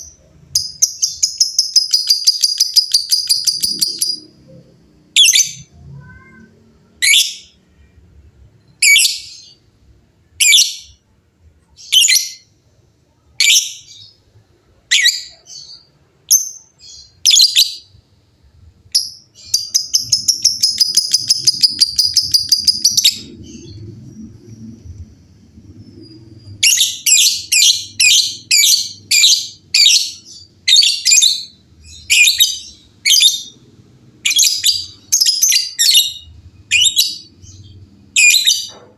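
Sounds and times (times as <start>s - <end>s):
lovebirds chirping and trilling: 0.0s - 7.7s, 14.9s - 18.0s, 18.8s - 38.9s.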